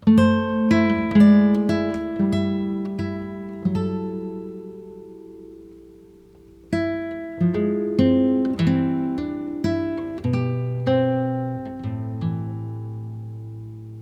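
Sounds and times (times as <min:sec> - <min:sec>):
acoustic guitar melody: 0:00.0 - 0:14.0.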